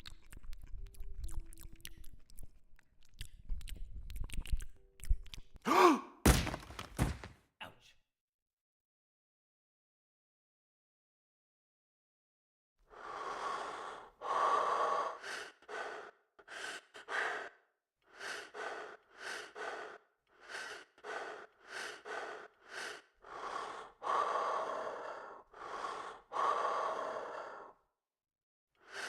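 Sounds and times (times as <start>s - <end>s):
person breathing hard: 5.7s - 6.2s, 12.9s - 27.9s, 28.8s - 29.0s.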